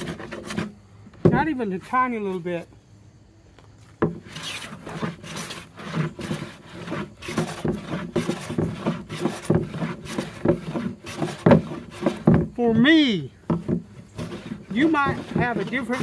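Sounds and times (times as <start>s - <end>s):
hand plane shaving wood: 0.0s - 0.8s, 4.0s - 12.6s, 13.5s - 16.0s.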